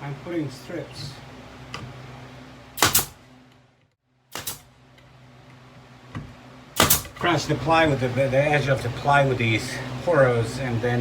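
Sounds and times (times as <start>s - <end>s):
sharp impacts fastening wood trim: 2.8s - 3.2s, 6.8s - 7.2s.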